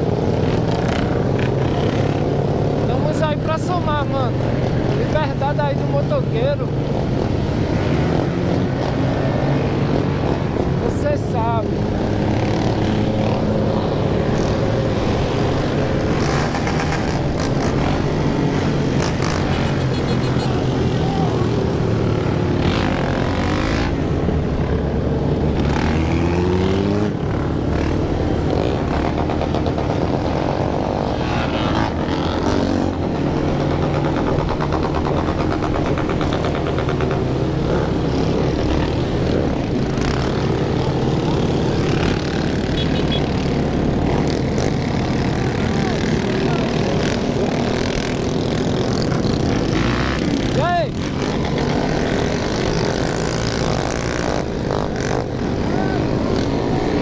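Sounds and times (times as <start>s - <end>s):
motorcycle engines droning: 0.0s - 57.0s
motorcycle engines revving: 0.0s - 57.0s.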